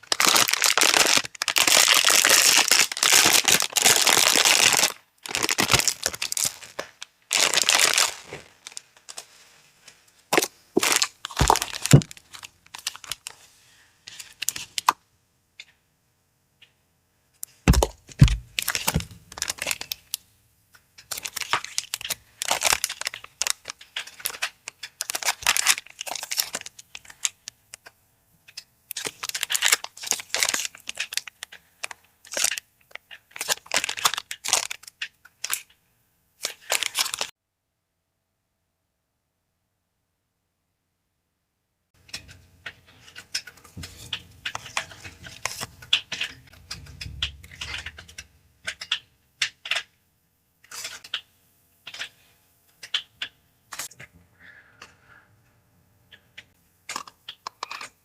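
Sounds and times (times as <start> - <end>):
paper packaging crinkling and tearing: 0.0 - 9.5, 10.3 - 13.5, 14.1 - 14.9, 17.7 - 20.2, 21.1 - 27.5, 28.9 - 35.7, 36.4 - 37.3, 43.8 - 46.8.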